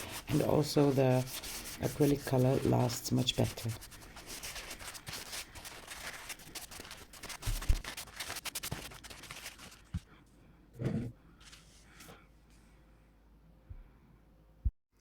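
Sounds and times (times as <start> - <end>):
scratchy rubbing on stone: 0.0 - 9.8.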